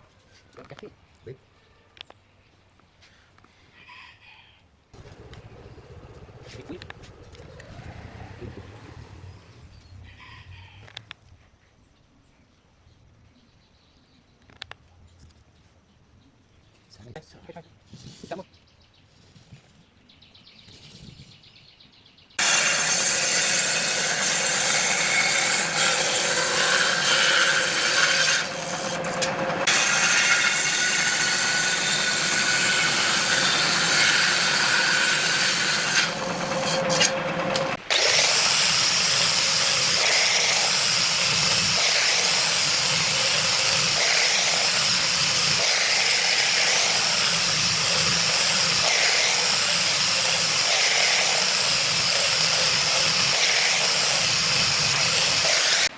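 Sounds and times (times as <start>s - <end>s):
power tool cutting wood: 5.0s - 9.8s, 22.4s - 55.9s.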